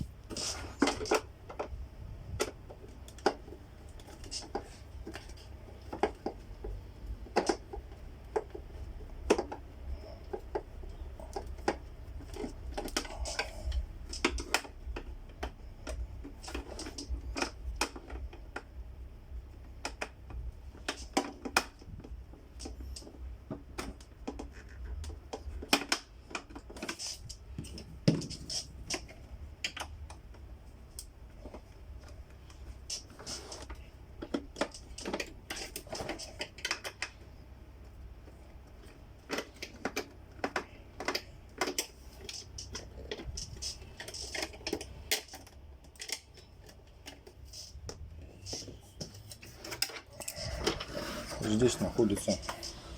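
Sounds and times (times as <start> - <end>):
plastic parts clicking and knocking: 0.0 - 52.9.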